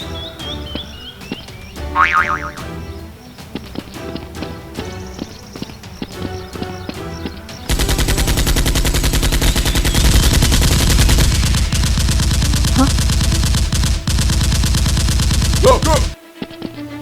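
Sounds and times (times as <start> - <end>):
background music: 0.0 - 17.0
rapid automatic gunfire: 7.7 - 16.2.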